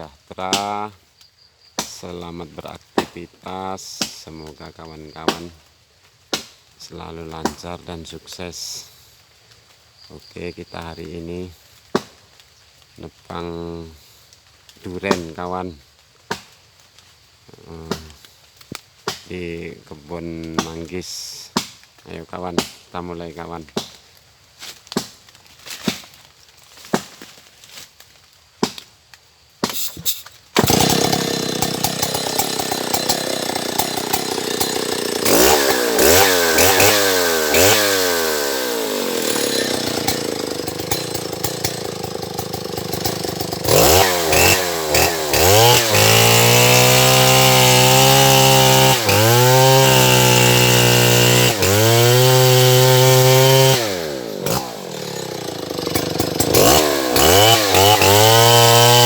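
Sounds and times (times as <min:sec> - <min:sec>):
chainsaw engine revving: 0:29.7 - 0:59.0.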